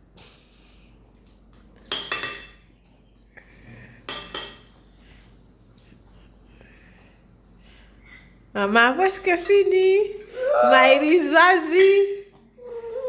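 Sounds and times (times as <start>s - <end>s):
cutlery scraping plates: 1.8s - 2.7s, 4.1s - 4.7s.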